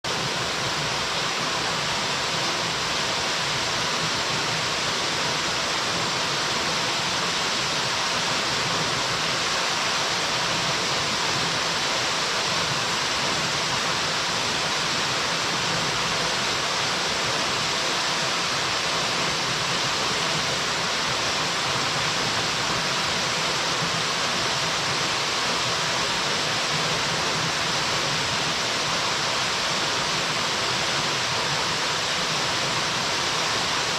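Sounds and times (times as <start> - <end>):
waterfall rushing: 0.0 - 33.9.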